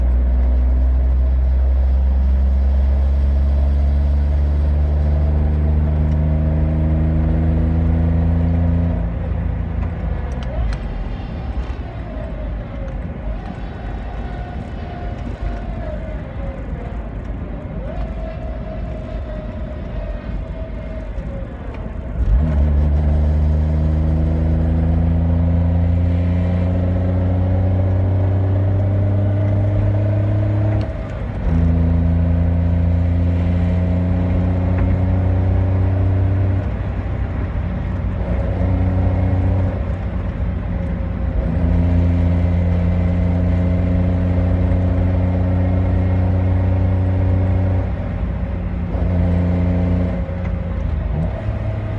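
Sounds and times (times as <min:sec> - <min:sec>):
car driving: 0:00.0 - 0:51.9
low transmission drone: 0:00.0 - 0:51.9.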